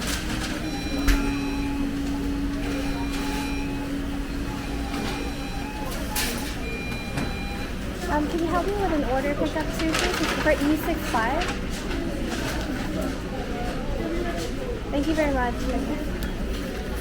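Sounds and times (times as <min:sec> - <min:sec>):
steady hum: 0:00.0 - 0:13.4
electronic kitchen beeps: 0:00.6 - 0:07.8.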